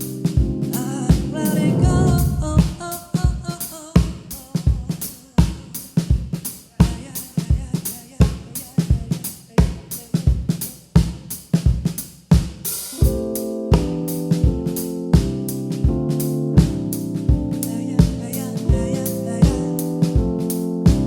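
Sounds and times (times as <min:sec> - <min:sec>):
held keyboard chords: 0:00.0 - 0:03.0, 0:13.0 - 0:21.0
drum kit playing: 0:00.0 - 0:21.0.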